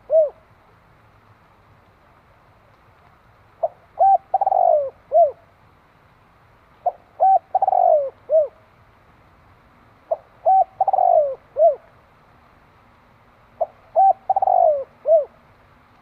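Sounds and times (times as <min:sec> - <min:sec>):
dove cooing: 0:00.0 - 0:00.4, 0:03.6 - 0:05.4, 0:06.8 - 0:08.6, 0:10.1 - 0:11.9, 0:13.6 - 0:15.4.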